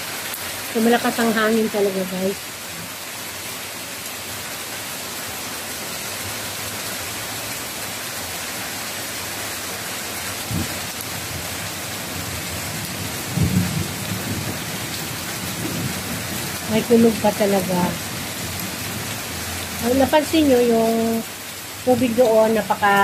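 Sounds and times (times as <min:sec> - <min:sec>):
heavy rain pouring: 0:00.0 - 0:23.0
thunder rumbling: 0:12.0 - 0:21.2.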